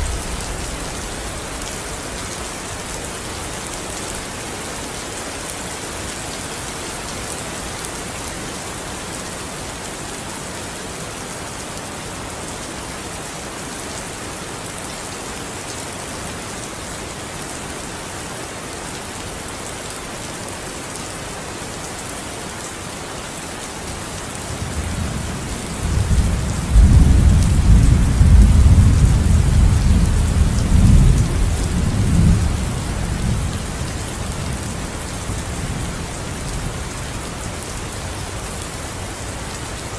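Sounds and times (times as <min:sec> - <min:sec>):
thunder rumbling: 0:00.0 - 0:03.0, 0:25.8 - 0:33.6
steady rain falling: 0:00.0 - 0:39.9.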